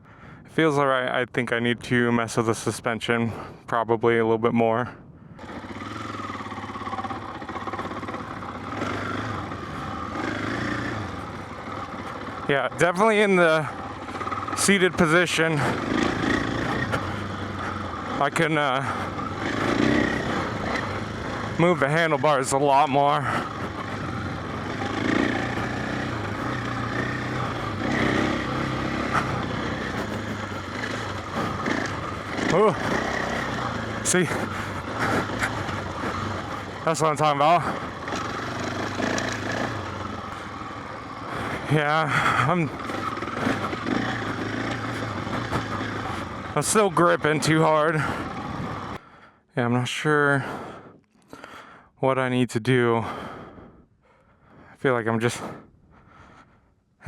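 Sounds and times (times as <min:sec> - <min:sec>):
dirt bike engine running: 0:05.3 - 0:49.3.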